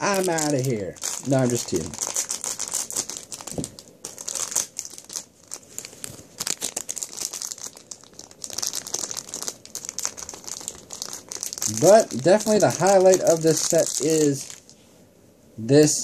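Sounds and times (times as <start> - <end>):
plastic packaging crinkling: 0.0 - 14.8.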